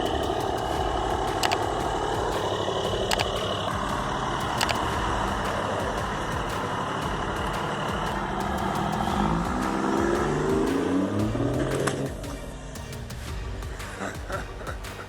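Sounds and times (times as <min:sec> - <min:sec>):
engine running and revving: 0:00.0 - 0:13.9.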